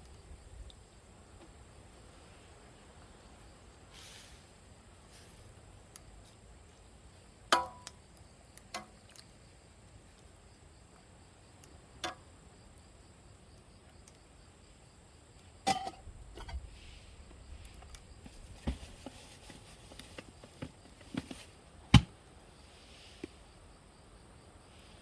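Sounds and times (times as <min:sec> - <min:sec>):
metal cookware clinking: 0:15.7 - 0:16.0.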